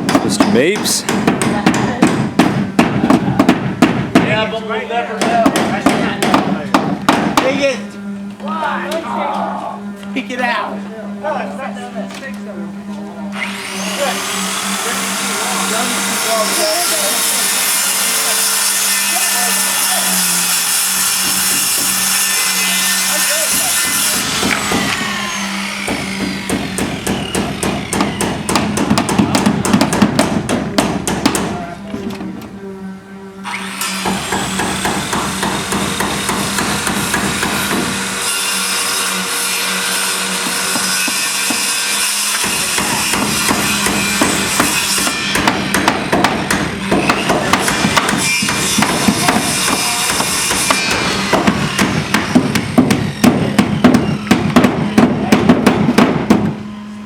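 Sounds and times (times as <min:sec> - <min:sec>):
hammers driving nails: 0:00.0 - 0:04.5, 0:05.2 - 0:07.6, 0:17.2 - 0:32.2, 0:33.8 - 0:56.7.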